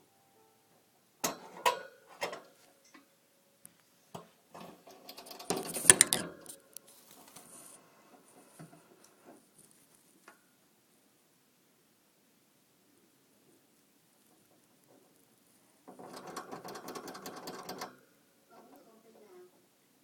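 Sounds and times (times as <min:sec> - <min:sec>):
hamster drinking from water bottle: 0:05.5 - 0:06.3.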